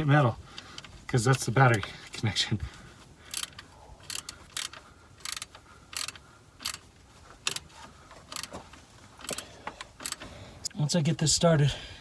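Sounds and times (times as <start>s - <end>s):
ratchet wrench clicking: 3.3s - 6.8s, 7.4s - 7.7s, 8.3s - 8.5s, 9.2s - 10.3s.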